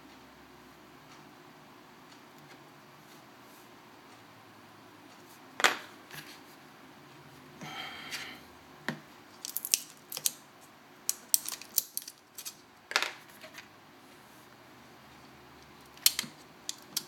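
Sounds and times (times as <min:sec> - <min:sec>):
metal tools clicking and tapping: 0:09.4 - 0:10.4, 0:11.1 - 0:13.5, 0:16.0 - 0:17.0.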